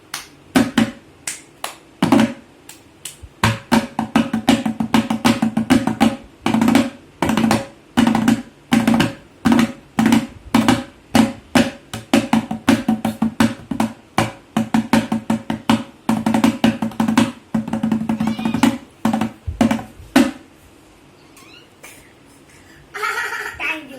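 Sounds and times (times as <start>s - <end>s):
tabla playing: 16.2s - 19.3s.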